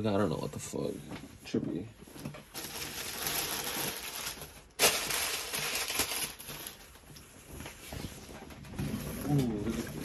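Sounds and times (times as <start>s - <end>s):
packaging rustling and crinkling: 2.1s - 10.0s.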